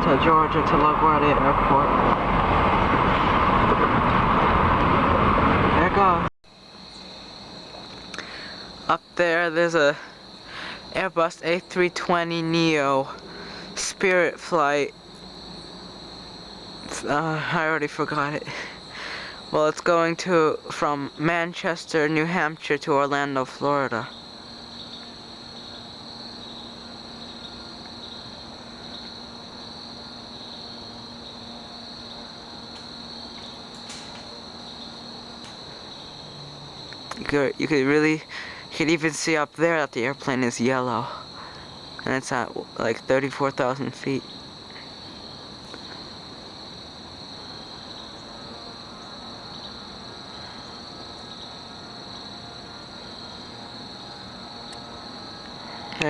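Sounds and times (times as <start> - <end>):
faint low hum: 0.0 - 4.9
high-pitched insect chorus: 0.0 - 56.0
low outdoor hum: 0.0 - 56.0.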